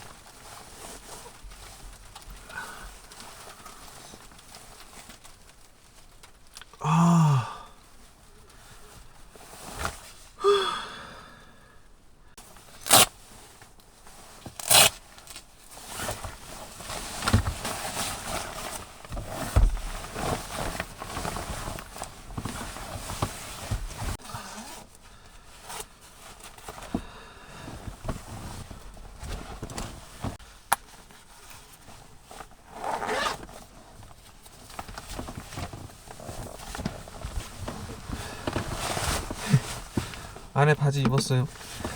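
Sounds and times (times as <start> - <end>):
clothing rustling: 0.0 - 6.6, 7.8 - 10.4, 12.3 - 41.9
zips pulled: 14.6 - 15.0, 32.7 - 33.4.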